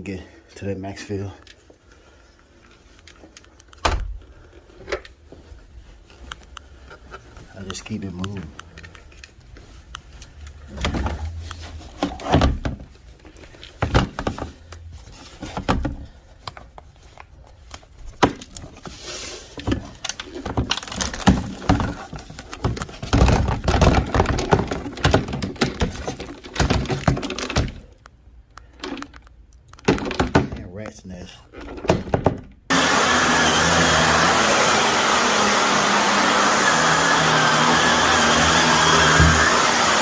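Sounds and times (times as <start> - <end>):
objects knocking and rattling: 13.6 - 14.7, 19.6 - 28.0, 28.7 - 30.6.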